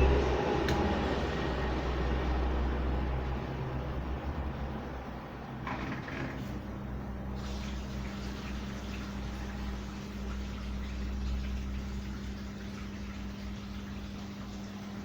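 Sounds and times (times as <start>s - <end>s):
drain pump humming: 0.0s - 15.0s
water rushing through pump: 0.0s - 15.0s.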